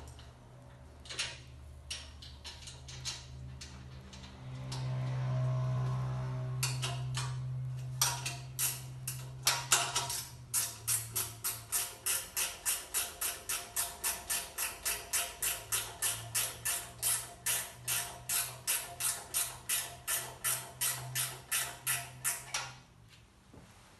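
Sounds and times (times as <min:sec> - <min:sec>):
sharp machine clicks: 0:10.0 - 0:22.5.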